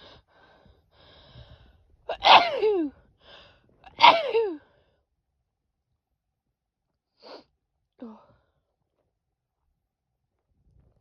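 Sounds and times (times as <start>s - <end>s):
gasping in-breath: 0.0s - 1.9s
woman sneezing: 2.1s - 2.9s, 3.9s - 4.6s.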